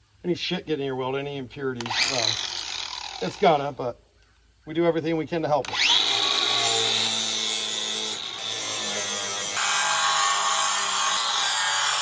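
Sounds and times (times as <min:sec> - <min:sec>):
angle grinder grinding steel: 0:01.8 - 0:03.5, 0:05.7 - 0:12.0.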